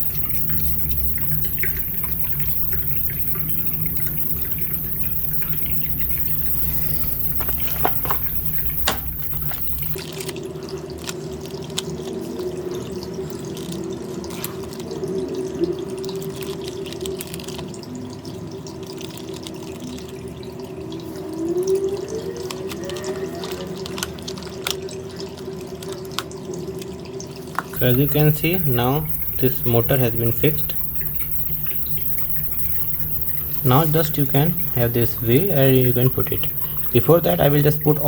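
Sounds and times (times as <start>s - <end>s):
steady background hum: 0.0s - 10.0s, 27.7s - 38.0s
plastic toy parts clicking: 16.2s - 17.8s, 22.4s - 24.8s.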